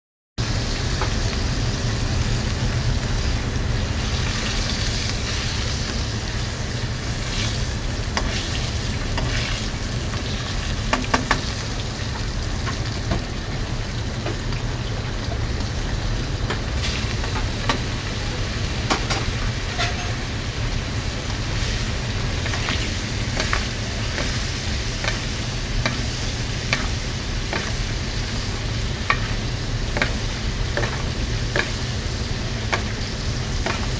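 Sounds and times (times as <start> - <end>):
beef sizzling: 0.4 - 33.9.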